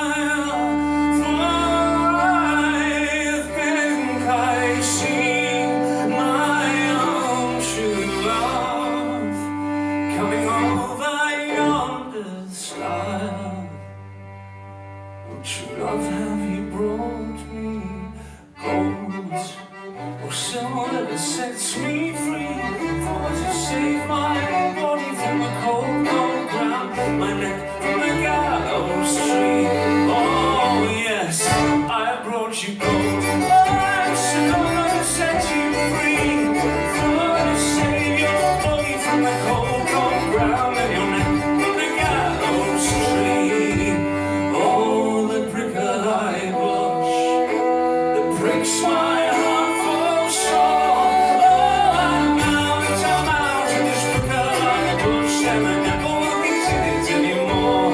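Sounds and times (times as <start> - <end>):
fiddle: 0.0 - 57.9
bass-chord accompaniment: 21.9 - 32.0, 32.8 - 45.6, 46.4 - 57.9.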